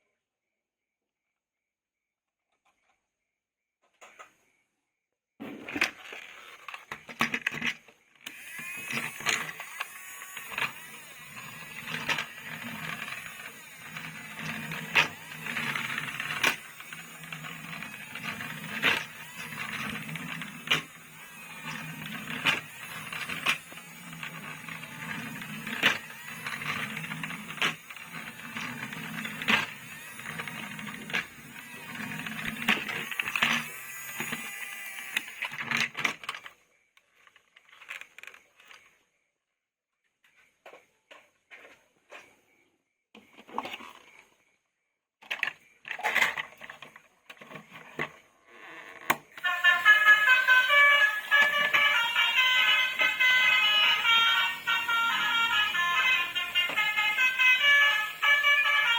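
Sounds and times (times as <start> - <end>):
plastic toys clicking: 49.1 - 58.9.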